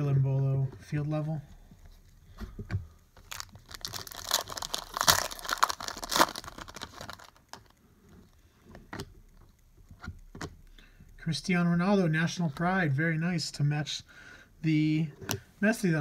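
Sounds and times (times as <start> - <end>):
cards rustling and crinkling: 0.6 - 9.1.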